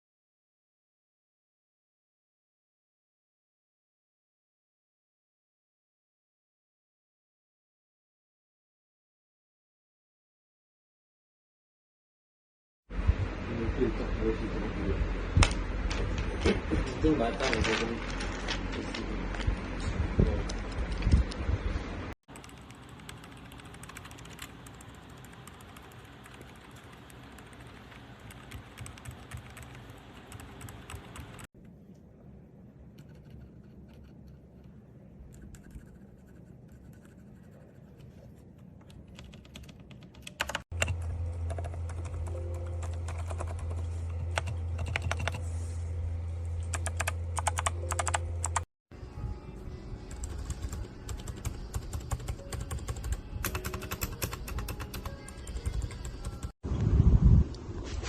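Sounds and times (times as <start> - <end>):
mechanical keyboard typing: 22.3 - 31.5, 33.0 - 34.7, 35.3 - 38.0, 38.8 - 45.4, 46.7 - 48.7, 50.1 - 56.6.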